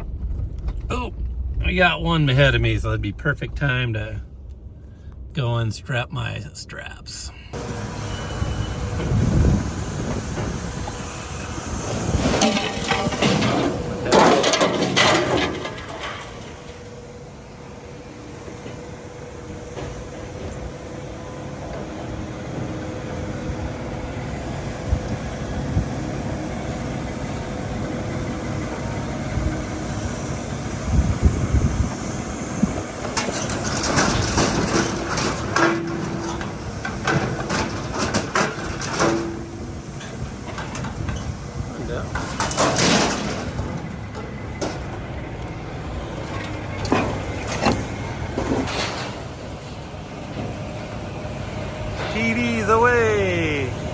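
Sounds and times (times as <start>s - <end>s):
engine running: 7.3s - 53.9s
metal clattering and knocking: 12.2s - 16.9s, 33.2s - 39.5s.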